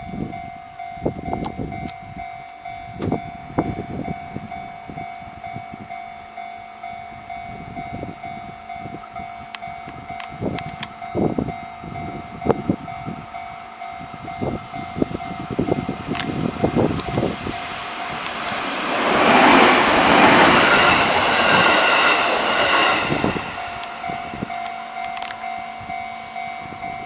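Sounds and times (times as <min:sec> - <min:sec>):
crossing warning bell ringing: 0:00.0 - 0:27.0
train wheels knocking on rails: 0:14.4 - 0:27.0.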